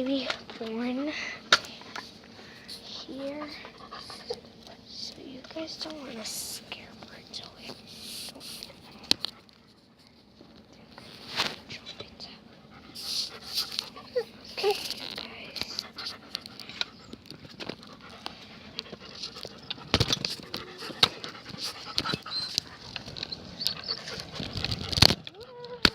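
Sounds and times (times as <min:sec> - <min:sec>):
dog panting: 0:02.7 - 0:06.8, 0:12.4 - 0:25.6.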